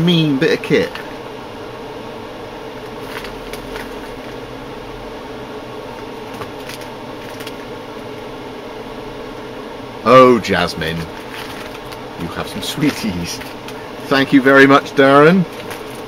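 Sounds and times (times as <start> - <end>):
steady fan-like hum: 0.0 - 16.0
rustling of items handled: 2.8 - 4.4, 5.9 - 7.8, 10.8 - 14.3, 15.4 - 16.0.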